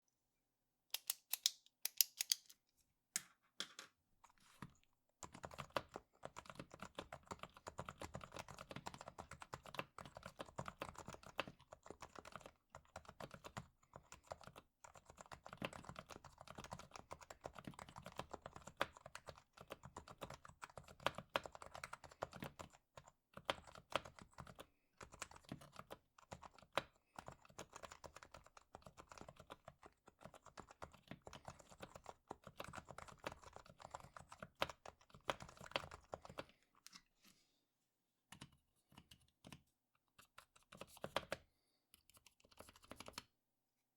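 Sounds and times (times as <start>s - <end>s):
keyboard typing: 5.2s - 36.5s, 40.3s - 43.3s.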